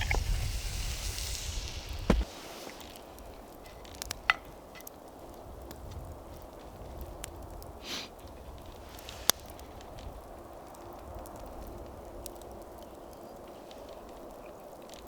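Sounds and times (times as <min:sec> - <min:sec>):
low hiss: 0:00.0 - 0:05.7
campfire crackling: 0:00.0 - 0:15.0
sharp loud wood crack: 0:01.4 - 0:02.3.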